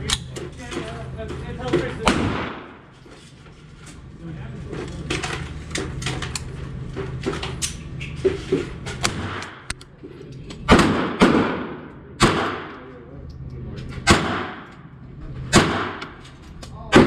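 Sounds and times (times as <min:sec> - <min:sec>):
gun handling clicks: 0:00.0 - 0:00.4
pistol gunshots echoing: 0:02.1 - 0:02.8, 0:10.7 - 0:12.8, 0:14.1 - 0:14.7, 0:15.5 - 0:16.1.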